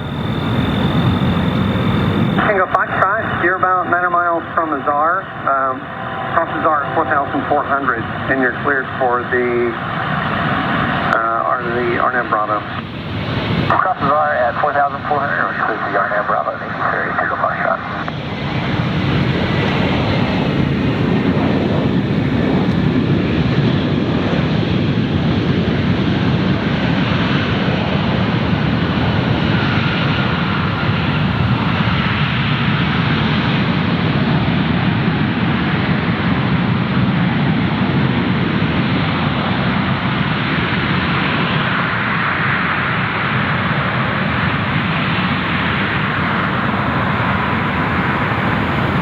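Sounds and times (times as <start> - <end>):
engine whine falling in pitch: 0.0 - 8.6, 18.0 - 23.7, 43.4 - 49.0
jet engines roaring: 0.0 - 49.0.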